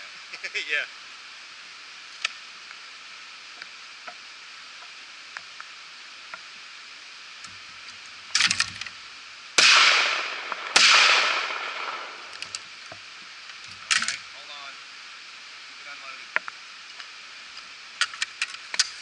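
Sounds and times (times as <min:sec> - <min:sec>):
steady hiss: 0:00.0 - 0:19.0
shotgun shots: 0:09.6 - 0:12.3.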